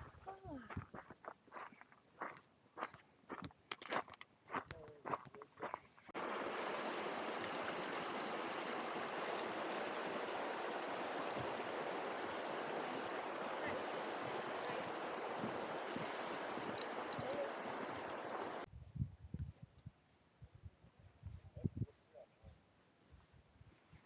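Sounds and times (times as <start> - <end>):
fast mountain stream rushing: 6.2 - 18.7.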